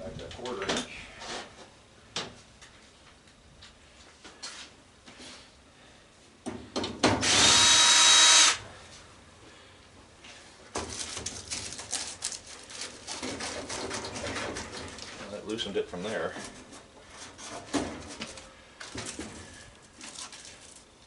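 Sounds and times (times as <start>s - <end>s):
power drill backing out screw: 7.2s - 8.6s.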